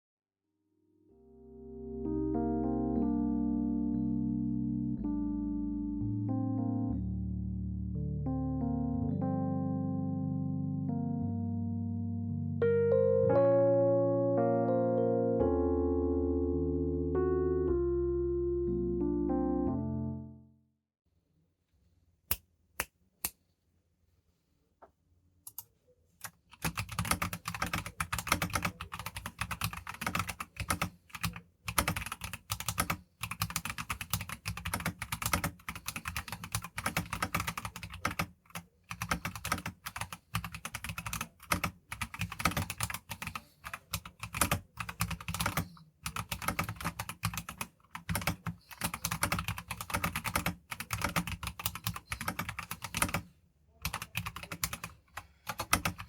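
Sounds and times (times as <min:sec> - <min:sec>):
mechanical keyboard typing: 0:26.2 - 0:56.0.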